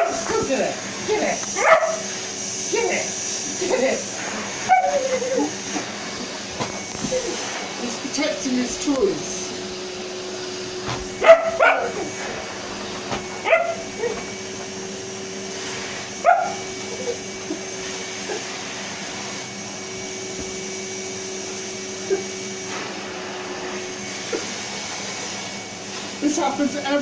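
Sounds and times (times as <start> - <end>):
dog barking: 0.0 - 0.3, 1.6 - 2.0, 11.2 - 12.1, 13.4 - 14.2, 16.2 - 17.2
vacuum cleaner running: 0.0 - 27.0.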